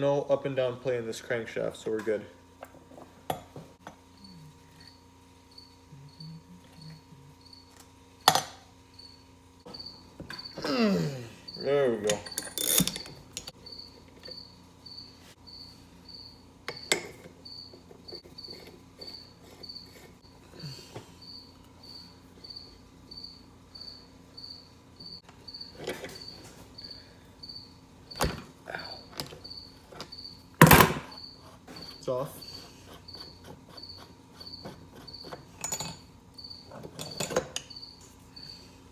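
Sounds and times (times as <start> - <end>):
cricket chirping: 3.8 - 38.8
knocks and clicks of handled parts: 35.2 - 36.0, 36.7 - 37.8.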